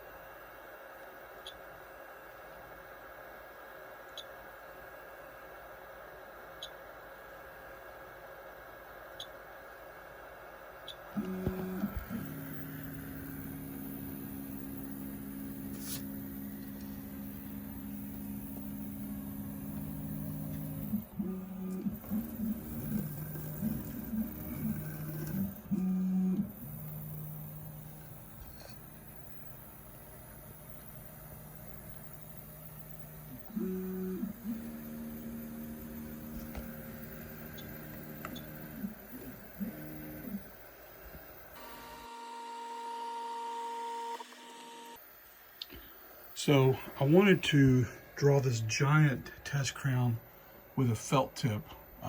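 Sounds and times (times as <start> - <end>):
stepper motors humming: 11.2 - 40.5.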